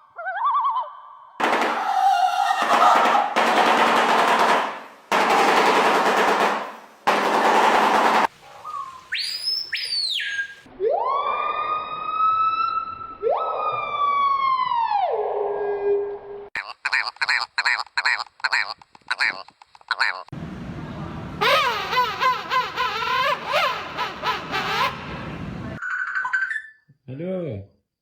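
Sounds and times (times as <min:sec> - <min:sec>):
siren-like bird wails: 0:01.8 - 0:03.3, 0:08.7 - 0:16.2
rising and falling whistle: 0:08.7 - 0:16.1
harsh rasping bird calls: 0:16.6 - 0:20.3, 0:21.4 - 0:25.1.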